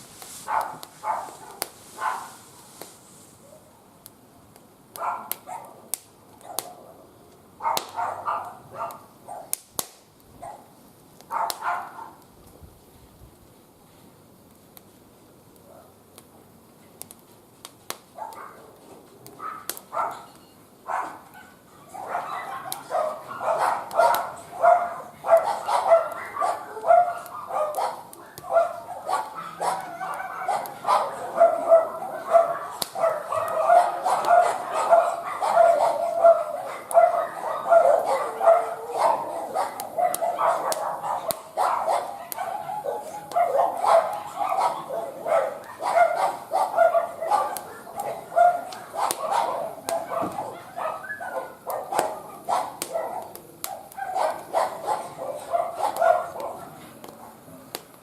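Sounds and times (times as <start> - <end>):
wood fire crackling: 0.0 - 58.0
dog barking: 0.5 - 2.4, 5.0 - 5.8, 6.4 - 7.0, 7.6 - 9.6, 10.4 - 10.7, 11.3 - 12.2, 18.2 - 18.8, 19.4 - 20.3, 20.9 - 57.4.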